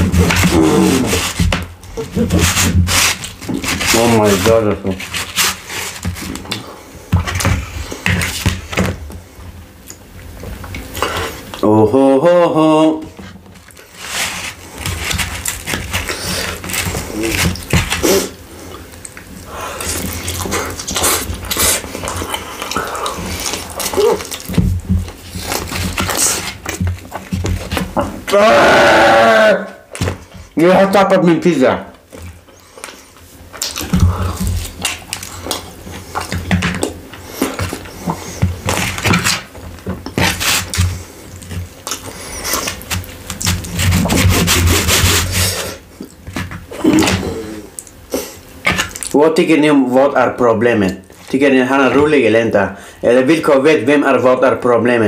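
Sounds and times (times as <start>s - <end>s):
wet chewing: 13.2s - 28.3s, 32.1s - 49.2s.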